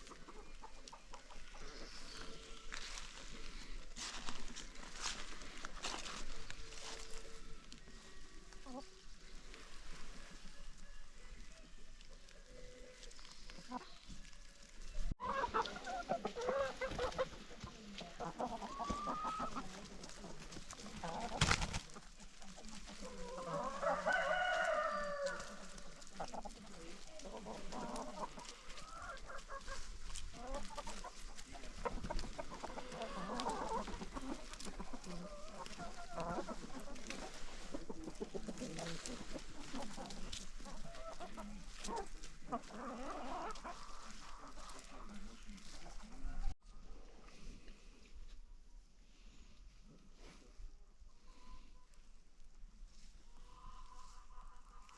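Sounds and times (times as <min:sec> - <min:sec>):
chickens clucking: 0:00.0 - 0:46.6, 0:49.8 - 0:54.9
rooster crowing: 0:23.5 - 0:25.6.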